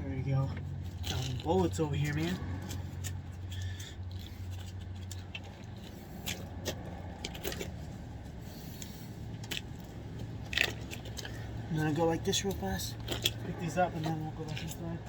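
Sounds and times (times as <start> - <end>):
passing traffic hum: 0.0 - 15.0.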